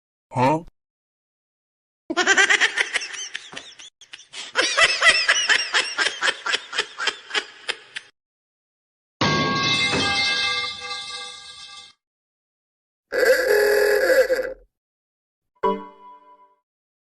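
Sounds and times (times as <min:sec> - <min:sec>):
person laughing hard: 0:02.1 - 0:08.1.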